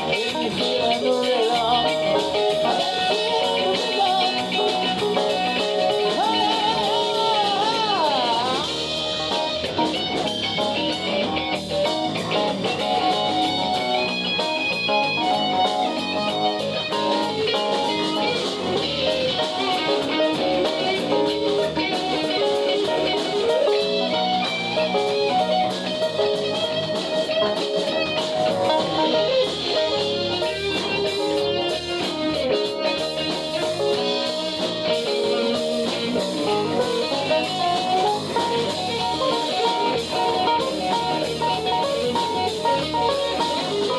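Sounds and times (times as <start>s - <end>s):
blues electric guitar with drums: 0.0s - 43.9s.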